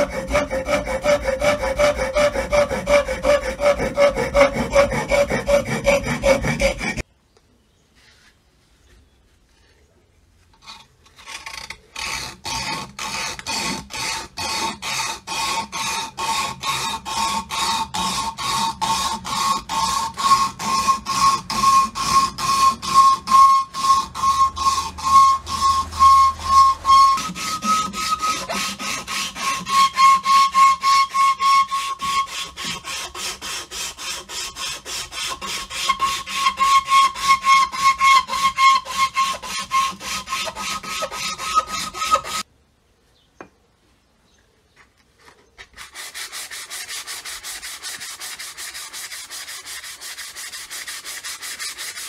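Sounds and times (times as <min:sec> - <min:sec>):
file squealing on axe: 0:00.0 - 0:07.0, 0:11.2 - 0:42.4.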